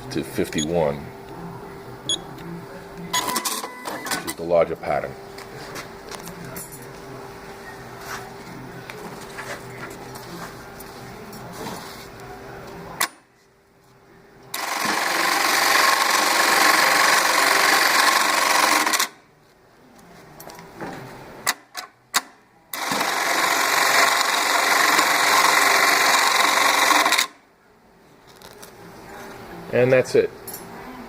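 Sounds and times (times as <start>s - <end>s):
industrial sewing machine running: 14.5s - 19.2s, 22.7s - 27.4s.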